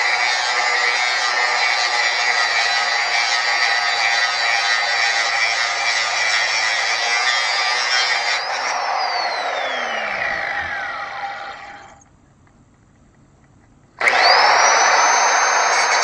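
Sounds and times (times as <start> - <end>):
angle grinder whine: 0.0 - 12.0, 14.0 - 16.0
grinding disc on metal: 0.0 - 12.0.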